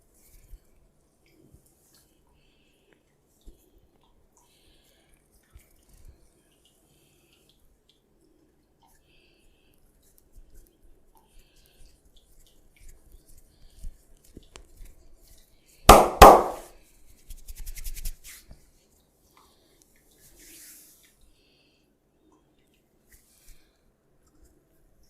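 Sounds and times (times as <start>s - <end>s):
loud sharp slaps: 15.9s - 16.7s.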